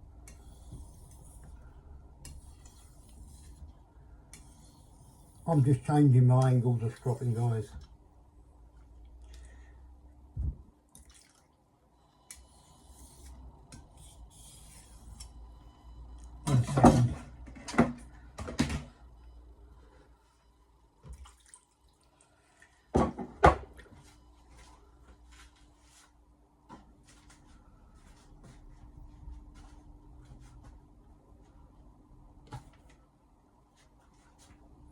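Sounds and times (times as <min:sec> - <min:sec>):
knife scraping on whetstone: 0:00.3 - 0:01.5, 0:02.3 - 0:03.6, 0:04.4 - 0:05.4, 0:14.0 - 0:15.3.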